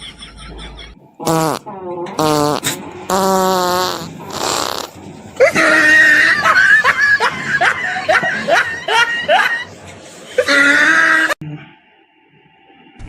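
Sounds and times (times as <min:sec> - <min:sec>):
fart noise: 0:01.2 - 0:05.0
high-pitched laughing and shrieking: 0:05.4 - 0:09.8, 0:10.4 - 0:11.4.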